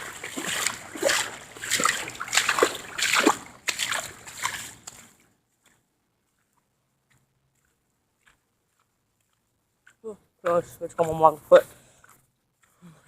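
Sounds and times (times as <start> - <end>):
person wading through water: 0.0 - 5.7.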